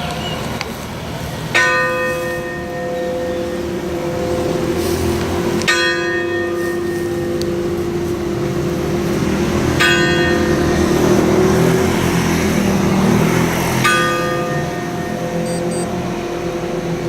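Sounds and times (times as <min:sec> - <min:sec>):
church bell struck by hand: 0:01.5 - 0:17.0
low bell hum: 0:01.6 - 0:17.0.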